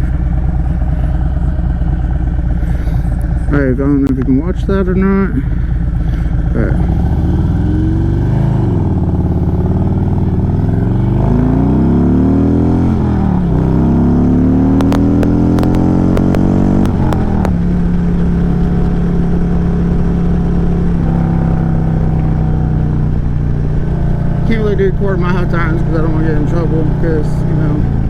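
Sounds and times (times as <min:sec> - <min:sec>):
motorcycle engine accelerating: 0:00.0 - 0:28.0
sharp clicks: 0:14.8 - 0:17.6.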